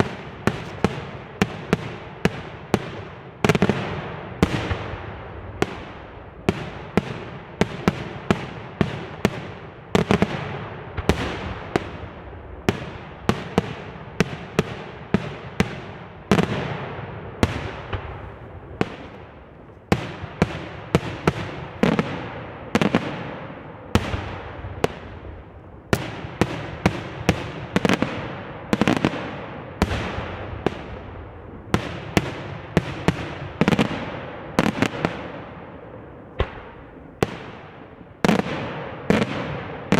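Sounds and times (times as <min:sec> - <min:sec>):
fireworks shell bursts: 0:00.4 - 0:01.1.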